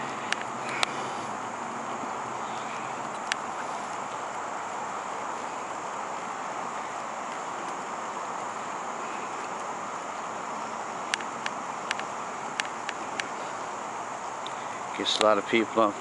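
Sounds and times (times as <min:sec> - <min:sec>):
car road noise: 0:00.0 - 0:16.0
sharp clicks: 0:11.1 - 0:13.4.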